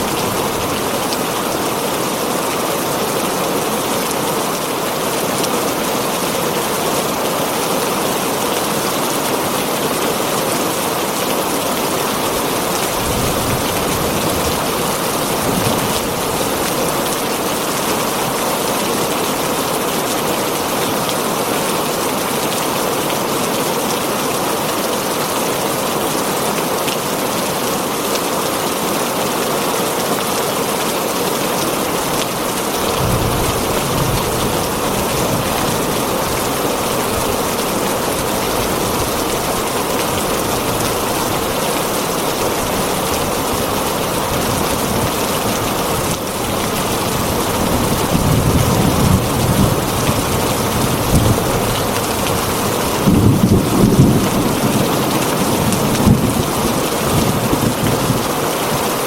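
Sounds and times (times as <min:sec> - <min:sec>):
heavy rain on a tin roof: 0:00.0 - 0:59.0.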